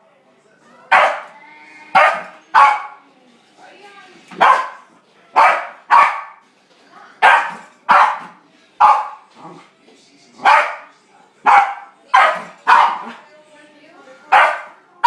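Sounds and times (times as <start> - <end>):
dog barking: 0.9 - 1.3, 1.9 - 3.0, 4.4 - 6.4, 7.2 - 9.2, 10.4 - 13.2, 14.3 - 14.8.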